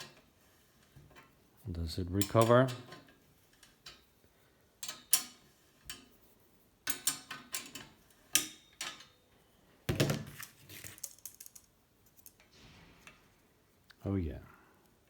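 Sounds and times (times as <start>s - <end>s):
metallic clicks and knocks: 2.2s - 4.1s, 4.8s - 6.1s, 6.9s - 9.2s
small rattles: 10.2s - 13.4s.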